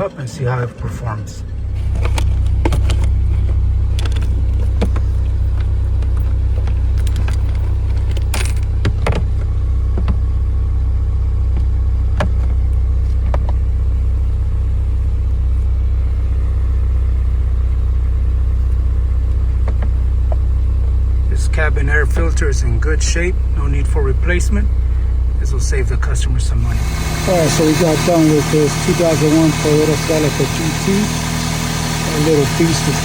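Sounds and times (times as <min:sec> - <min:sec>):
car engine idling: 0:00.0 - 0:33.0.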